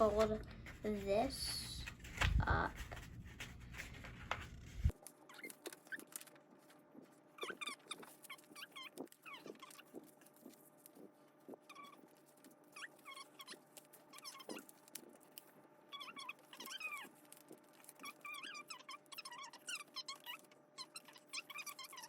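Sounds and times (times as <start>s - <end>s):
pet squeaky calls: 5.3s - 6.2s, 7.4s - 12.1s, 12.7s - 15.1s, 15.9s - 22.0s.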